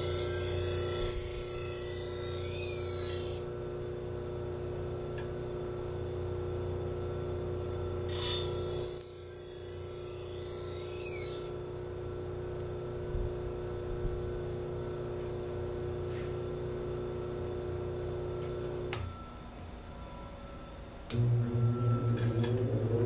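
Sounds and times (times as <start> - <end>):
knife blade scraping wheel: 0.0 - 3.5, 8.1 - 11.7
grinder motor humming: 0.0 - 3.8, 21.1 - 23.0.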